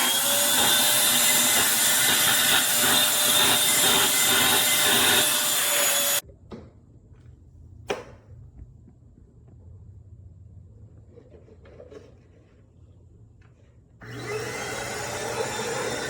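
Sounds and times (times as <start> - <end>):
vacuum cleaner running: 0.0 - 6.2, 14.0 - 16.0.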